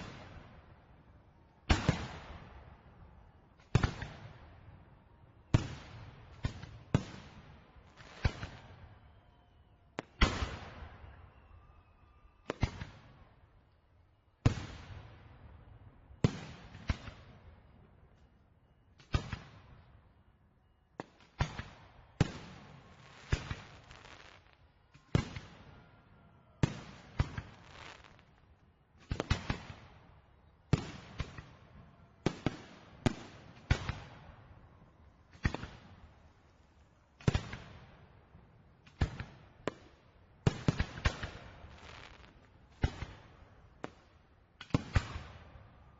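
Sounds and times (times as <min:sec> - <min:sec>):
fireworks bursting with echoing bangs: 0:01.7 - 0:03.0, 0:03.7 - 0:04.8, 0:05.5 - 0:09.2, 0:10.0 - 0:11.2, 0:12.5 - 0:13.3, 0:14.4 - 0:15.6, 0:16.2 - 0:17.6, 0:21.0 - 0:34.6, 0:35.2 - 0:36.4, 0:37.1 - 0:45.8.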